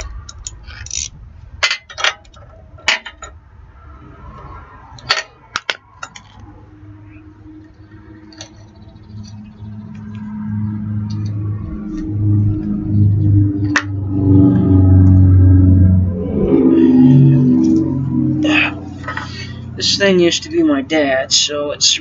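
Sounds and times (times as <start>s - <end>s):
low steady hum: 10.7s - 21.3s.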